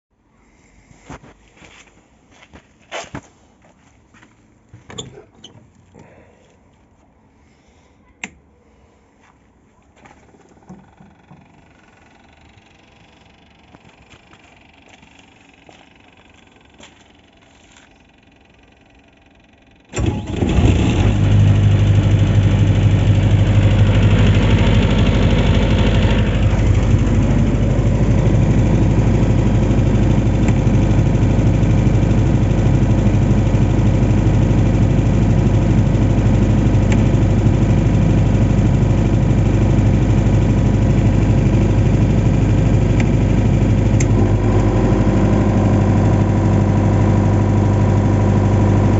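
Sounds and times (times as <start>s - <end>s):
diesel engine starting and running: 10.3s - 48.9s.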